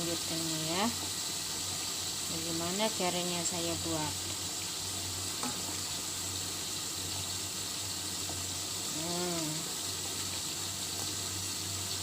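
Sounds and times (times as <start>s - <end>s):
pot of water hissing: 0.0s - 12.0s
person humming: 8.9s - 9.7s.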